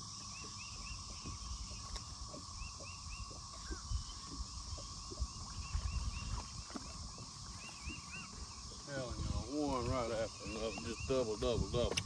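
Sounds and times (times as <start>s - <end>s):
insect drone: 0.0s - 12.0s
low wind or water rumble: 0.0s - 12.0s
songbird singing: 0.0s - 12.0s.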